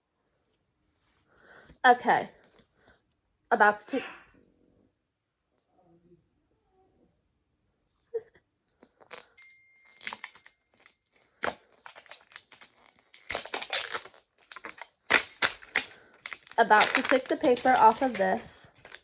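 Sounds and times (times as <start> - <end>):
paper wrapper tearing and crumpling: 9.0 - 19.0.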